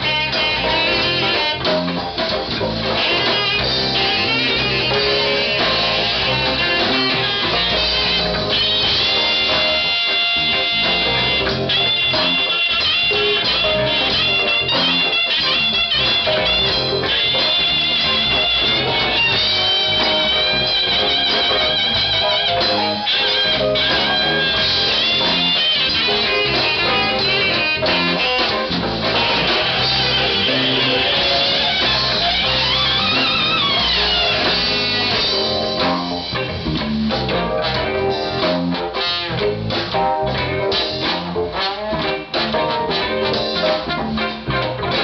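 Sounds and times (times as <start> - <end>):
band playing with guitar: 0.0 - 45.0
low bass line: 0.0 - 45.0.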